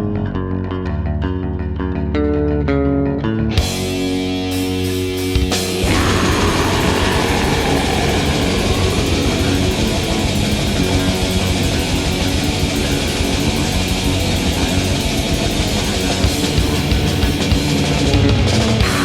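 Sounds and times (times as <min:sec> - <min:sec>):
distorted electric guitars: 0:00.0 - 0:19.0
fast drumming: 0:05.4 - 0:19.0.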